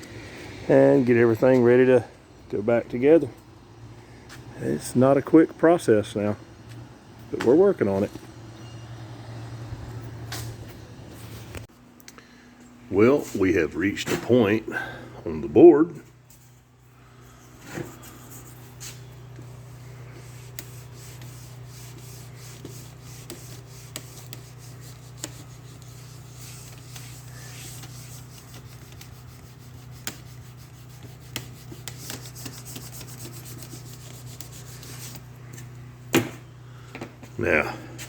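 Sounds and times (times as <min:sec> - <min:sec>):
steady low hum: 0:00.0 - 0:38.0
sandpaper rubbing fiberglass: 0:17.7 - 0:35.4.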